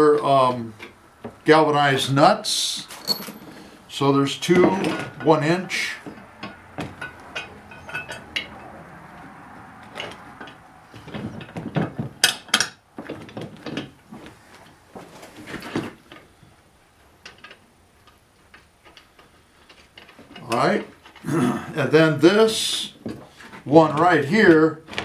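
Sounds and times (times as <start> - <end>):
metal bolts and nuts clinking: 2.8 - 3.7, 4.3 - 8.7, 9.9 - 14.0.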